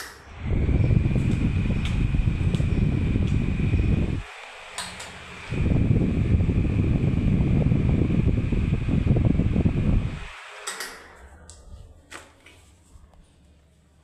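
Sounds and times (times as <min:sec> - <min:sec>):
high motor whine: 0:00.0 - 0:12.0
electric fan airflow rushing: 0:00.0 - 0:14.0.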